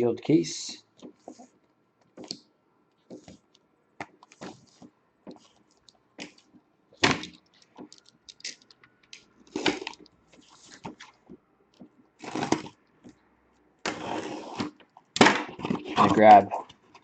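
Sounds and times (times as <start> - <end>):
cardboard and tape crackling: 4.0 - 13.2, 13.8 - 17.0.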